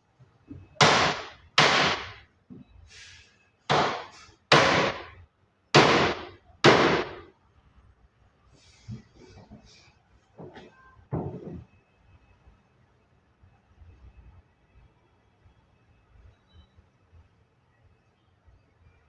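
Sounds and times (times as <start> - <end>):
hammer striking nails into plywood: 0.8 - 2.2, 3.7 - 5.2, 5.8 - 7.3.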